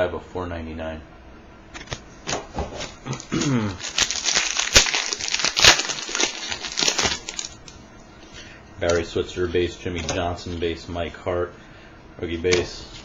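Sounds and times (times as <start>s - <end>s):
wrapper crinkling and tearing: 2.8s - 7.8s.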